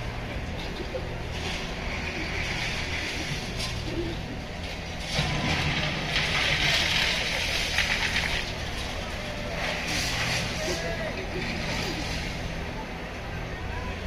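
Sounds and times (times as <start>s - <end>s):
machinery engine hum: 0.0s - 14.0s.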